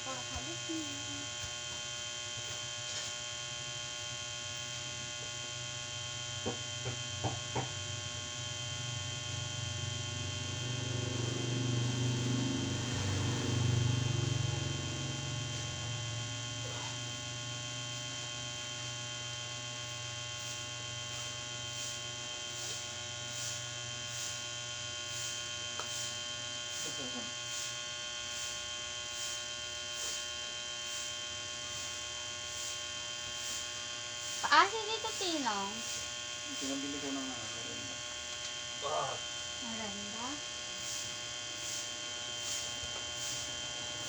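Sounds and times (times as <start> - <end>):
steady electric hum: 0.0 - 44.0.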